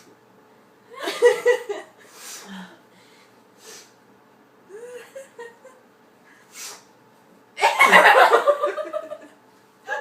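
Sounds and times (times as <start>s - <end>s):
women laughing: 0.9s - 2.0s, 4.7s - 5.8s, 7.6s - 10.0s
short breath: 2.1s - 4.0s.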